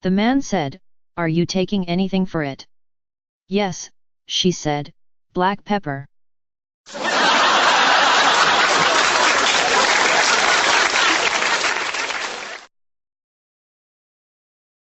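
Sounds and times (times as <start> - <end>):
crowd applauding: 6.9 - 12.7.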